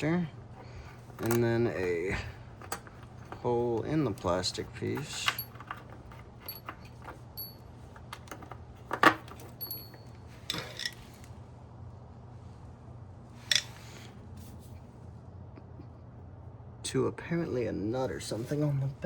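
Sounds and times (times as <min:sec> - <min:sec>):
steady low hum: 0:00.0 - 0:19.0
metal screws clinking: 0:04.2 - 0:11.1.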